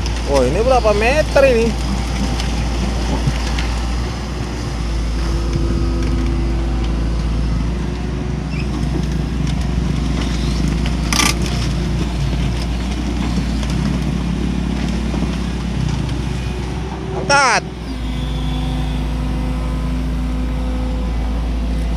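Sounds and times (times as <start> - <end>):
excavator diesel engine running: 0.0 - 21.9.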